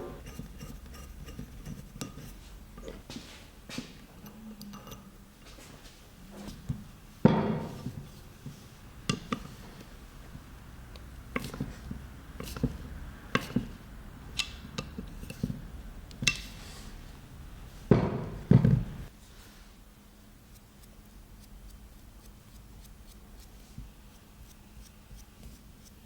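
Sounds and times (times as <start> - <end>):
heavy thunk: 17.9 - 19.0.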